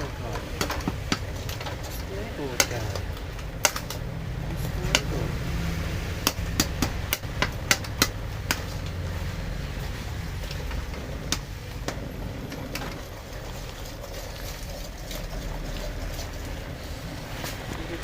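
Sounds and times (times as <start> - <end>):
steady low rumble: 0.0 - 14.2
sharp clicks and taps: 0.3 - 2.0, 2.6 - 5.1, 6.2 - 9.0, 10.4 - 12.0.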